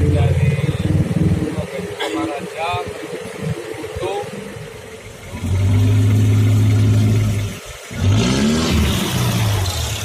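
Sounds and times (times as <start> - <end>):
diesel engine revving: 0.0 - 10.0.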